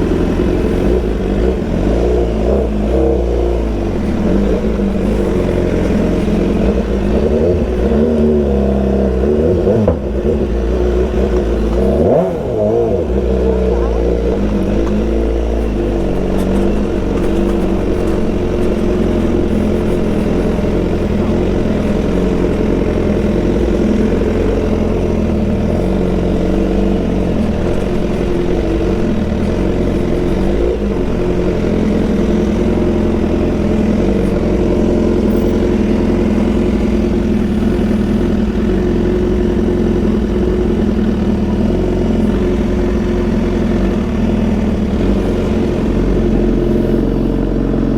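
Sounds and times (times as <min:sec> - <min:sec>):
motorcycle engine running: 0:00.0 - 0:47.9.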